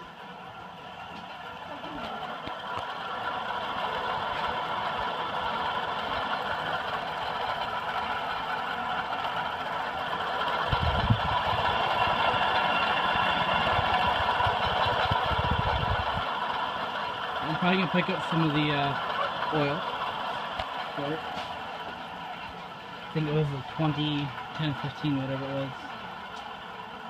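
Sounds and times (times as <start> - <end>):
ceiling fan whirring: 0.0 - 27.0.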